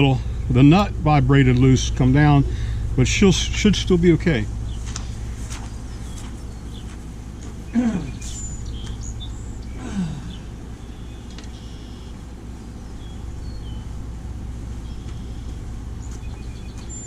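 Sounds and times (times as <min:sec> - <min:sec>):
chainsaw engine idling: 0:00.0 - 0:17.0
small birds chirping: 0:04.3 - 0:17.0.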